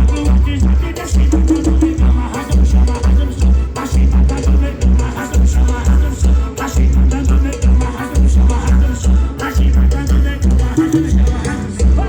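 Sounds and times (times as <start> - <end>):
deep bass beats: 0.0 - 12.0
music through car sound system: 0.0 - 12.0.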